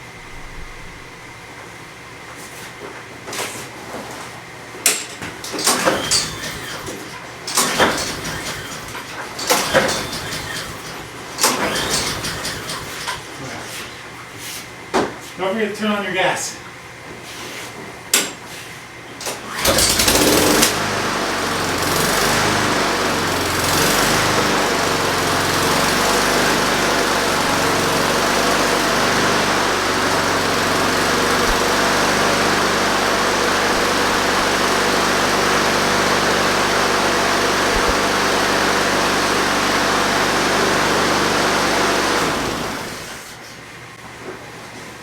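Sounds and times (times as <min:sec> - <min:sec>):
mower pull start: 0:05.3 - 0:13.5, 0:19.2 - 0:43.4
lawn mower engine running: 0:05.4 - 0:13.4, 0:19.4 - 0:43.4.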